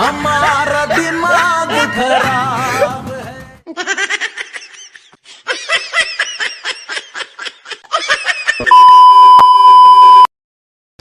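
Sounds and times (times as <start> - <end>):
loud steady beep: 8.7 - 10.3.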